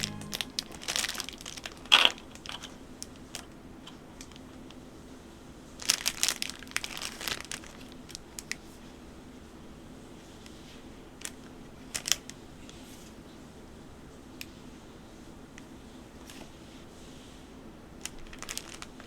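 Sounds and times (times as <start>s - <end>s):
packaging crinkling and rustling: 0.2s - 4.6s, 5.8s - 8.6s, 11.2s - 12.4s, 18.0s - 19.0s.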